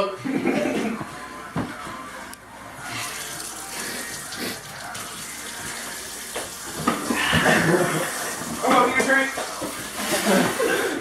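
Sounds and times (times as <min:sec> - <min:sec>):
water running from a tap: 0:03.1 - 0:10.5.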